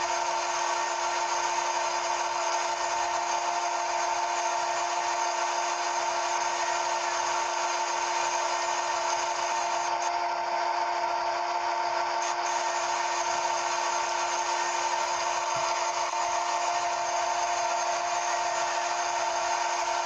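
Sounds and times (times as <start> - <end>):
machine whine: 0.0 - 20.0.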